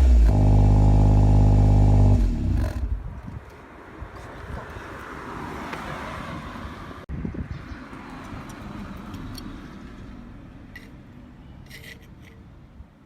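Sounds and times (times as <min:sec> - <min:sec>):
car engine exhaust: 0:00.0 - 0:03.1.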